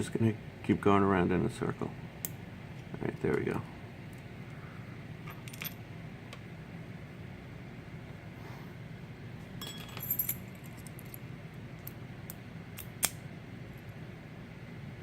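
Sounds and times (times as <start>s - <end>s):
small metal parts clinking: 5.2s - 5.8s, 9.6s - 11.2s.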